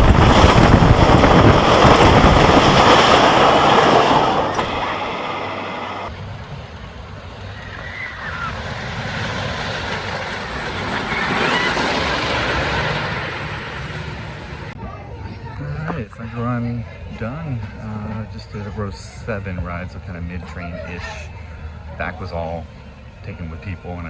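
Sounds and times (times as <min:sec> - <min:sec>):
air rushing over microphone: 0:00.0 - 0:14.8
roller coaster train running: 0:00.0 - 0:24.0.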